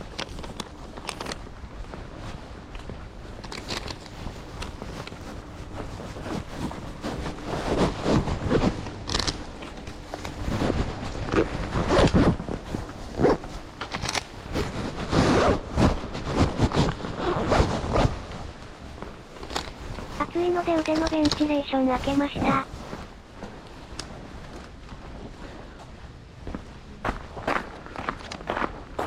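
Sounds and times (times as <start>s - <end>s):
zippers being pulled open: 0.0s - 1.5s, 3.4s - 18.2s, 19.4s - 21.5s.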